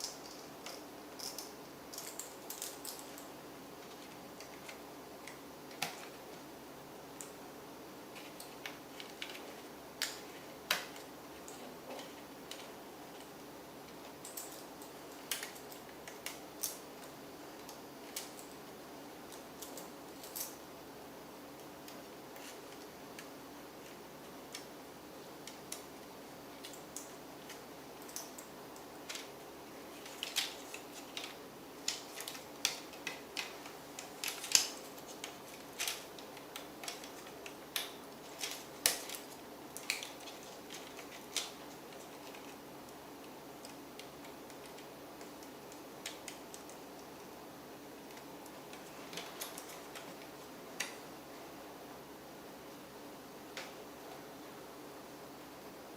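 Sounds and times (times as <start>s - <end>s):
tools and laptop parts clicking: 0.0s - 3.2s, 30.0s - 42.6s.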